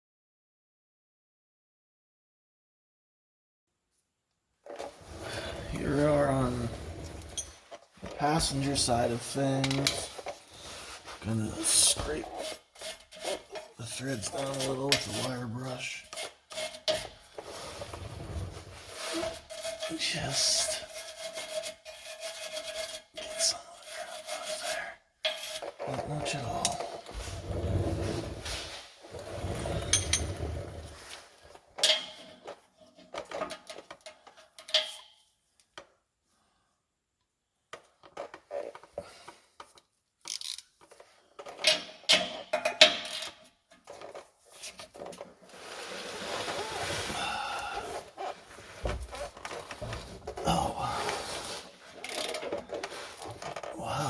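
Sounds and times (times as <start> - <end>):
metal tools clinking and scraping: 5.5 - 10.4, 11.0 - 17.9, 18.9 - 27.1, 28.1 - 31.2, 31.8 - 35.2, 41.4 - 45.1.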